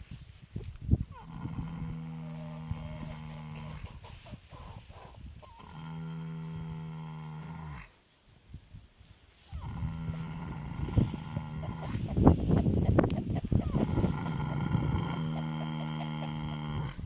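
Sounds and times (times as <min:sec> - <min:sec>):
horse snoring: 0:01.1 - 0:03.9, 0:05.5 - 0:08.0, 0:09.5 - 0:12.0, 0:13.6 - 0:17.0.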